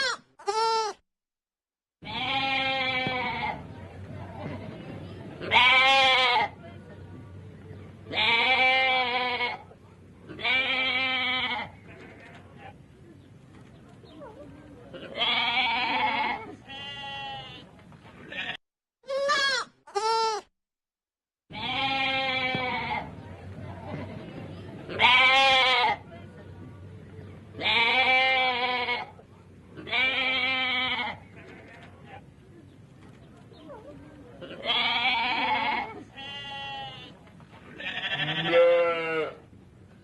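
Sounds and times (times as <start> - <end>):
goats bleating: 2.0 - 3.6, 15.0 - 17.6, 21.5 - 23.1, 24.9 - 26.0, 27.6 - 29.1, 29.8 - 31.9, 34.4 - 39.4.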